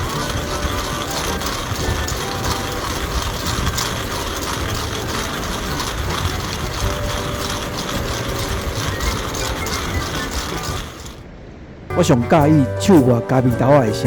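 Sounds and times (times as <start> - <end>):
hand coffee grinder grinding beans: 0.0 - 11.2.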